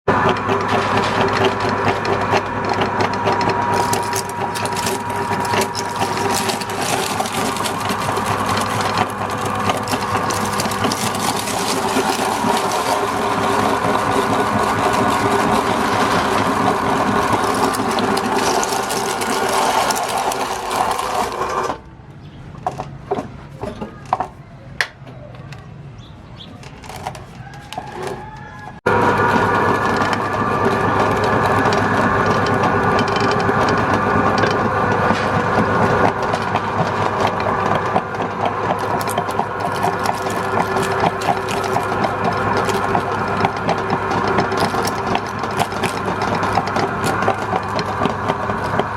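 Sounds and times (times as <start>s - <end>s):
electric meat grinder motor: 0.1s - 21.8s, 26.8s - 48.9s.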